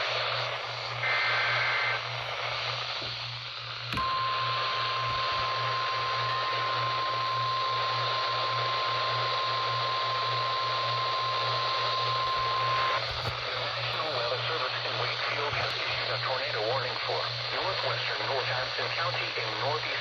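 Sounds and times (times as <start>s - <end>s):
radio static hiss: 0.0s - 20.0s
steady pure alarm tone: 2.8s - 13.1s.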